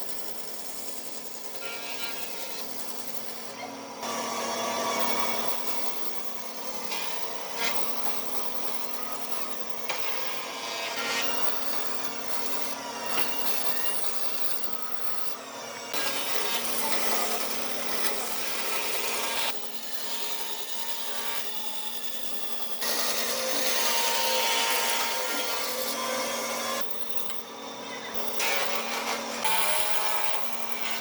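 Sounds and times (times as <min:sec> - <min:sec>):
power tool motor hum: 0:22.8 - 0:31.0.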